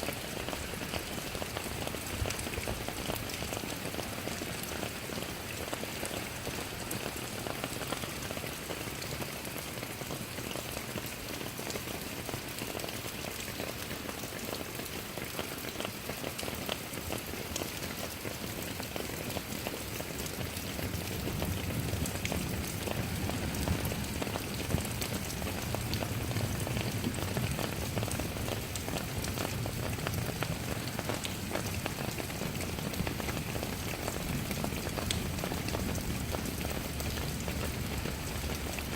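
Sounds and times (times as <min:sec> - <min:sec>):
rain drops ticking on surface: 0:00.0 - 0:38.9
low rumble: 0:21.2 - 0:27.2.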